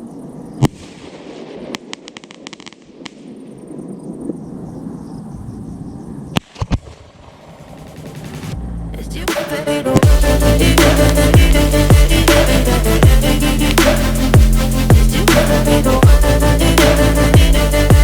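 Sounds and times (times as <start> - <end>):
crackling firework pops: 0.6 - 3.5, 6.4 - 8.2
background rumble: 7.2 - 9.3.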